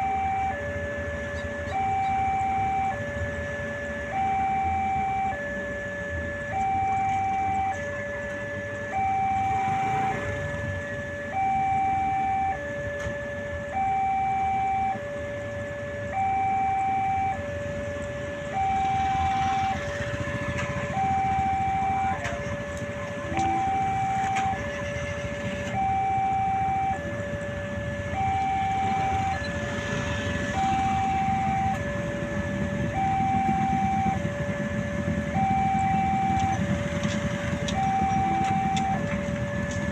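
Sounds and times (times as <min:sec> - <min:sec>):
level-crossing warning siren: 0:00.0 - 0:39.9
steady rumble: 0:17.4 - 0:39.9.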